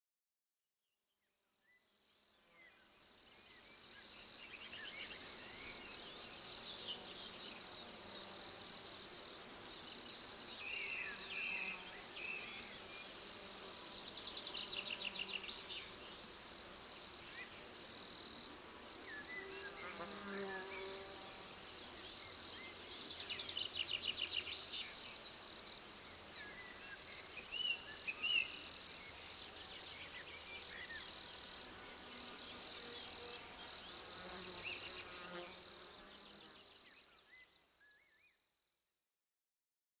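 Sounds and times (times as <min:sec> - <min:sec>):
crickets trilling: 0:02.1 - 0:38.2
buzzy pulsing insect chirping: 0:19.0 - 0:25.4.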